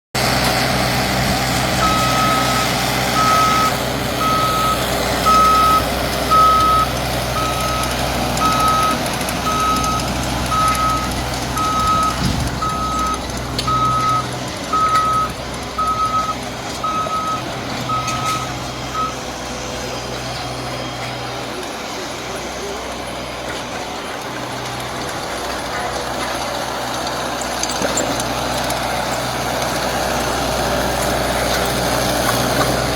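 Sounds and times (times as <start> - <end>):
machine engine running: 0.2 - 32.9
reversing alarm beeping: 1.7 - 19.3.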